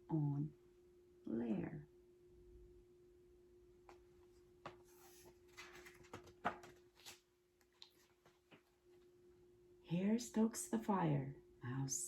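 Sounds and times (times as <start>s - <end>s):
faint steady hum: 0.0s - 12.0s
paper rustling: 4.6s - 8.8s.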